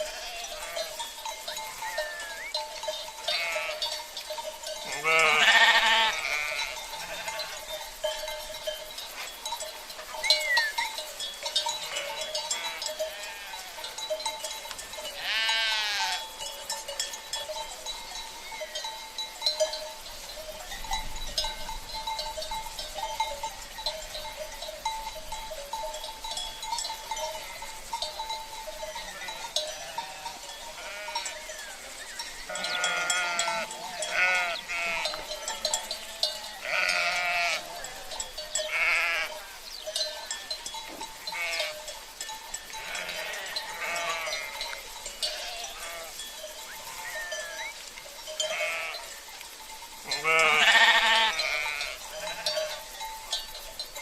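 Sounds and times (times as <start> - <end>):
sheep bleating: 0.0 - 1.0, 1.6 - 2.6, 3.2 - 4.0, 4.8 - 7.7, 11.8 - 13.8, 15.2 - 16.2, 29.1 - 39.4, 41.3 - 41.8, 42.7 - 47.7, 48.4 - 49.1, 50.1 - 52.7
sheep bells clinking: 0.0 - 54.0.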